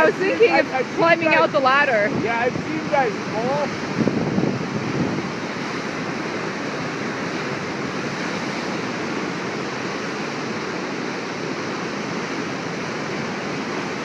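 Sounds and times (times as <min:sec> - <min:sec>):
whitewater rushing: 0:00.0 - 0:14.0.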